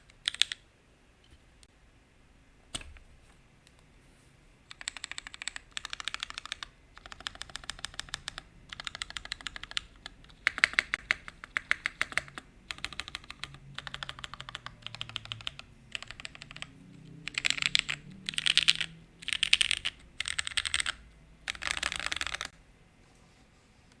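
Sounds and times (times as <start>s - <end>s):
mechanical keyboard typing: 0.0s - 0.6s, 4.7s - 22.6s.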